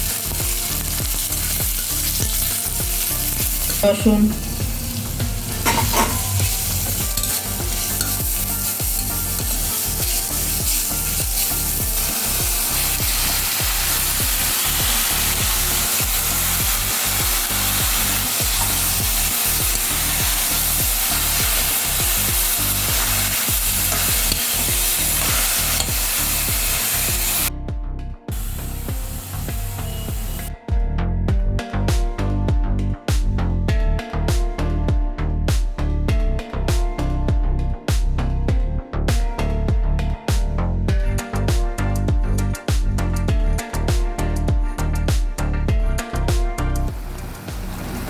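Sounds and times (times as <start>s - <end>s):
garlic sizzling in oil: 0.0s - 27.5s, 28.3s - 30.5s, 47.0s - 48.0s.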